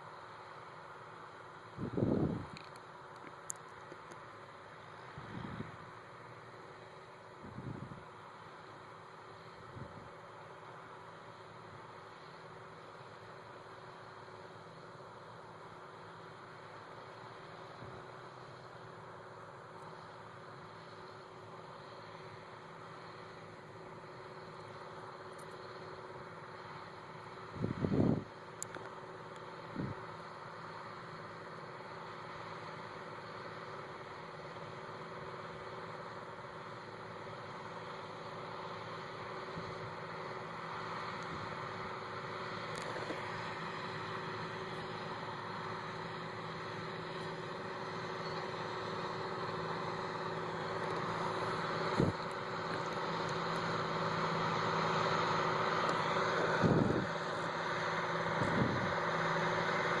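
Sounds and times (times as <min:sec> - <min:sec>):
harvester engine running: 0:00.0 - 1:00.0.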